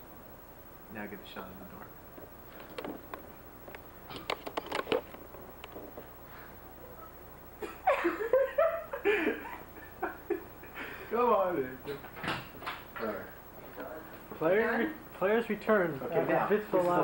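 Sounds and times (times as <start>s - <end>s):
sharp clicks and knocks: 2.6s - 5.8s
people laughing loudly: 7.6s - 11.0s.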